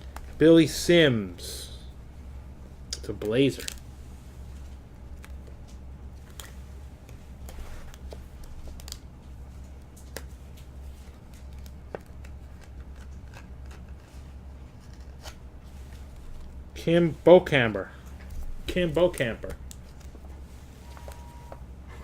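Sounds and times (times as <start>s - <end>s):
steady low hum: 0.0s - 22.0s
trading cards sliding and rustling: 6.2s - 8.9s, 18.1s - 22.0s.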